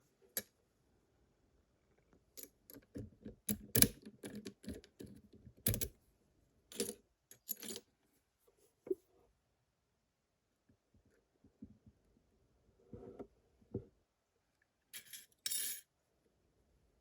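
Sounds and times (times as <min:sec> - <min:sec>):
metallic lock clicks and rattles: 0:02.7 - 0:05.1.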